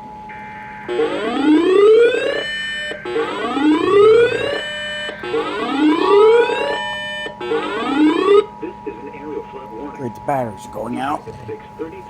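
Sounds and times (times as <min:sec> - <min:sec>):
electronic siren whooping: 0:00.3 - 0:08.5.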